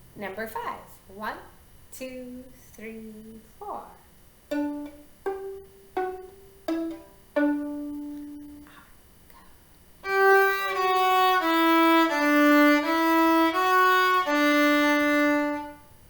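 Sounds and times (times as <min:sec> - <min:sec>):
bowed viola notes: 0:04.5 - 0:08.8, 0:10.0 - 0:16.0
plucked viola notes: 0:04.5 - 0:08.8, 0:10.0 - 0:15.9.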